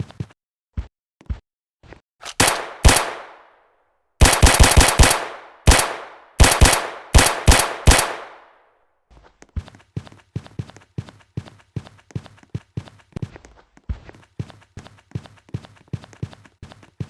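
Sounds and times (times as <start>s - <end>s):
gunshots echoing: 2.3s - 3.5s, 4.2s - 8.5s.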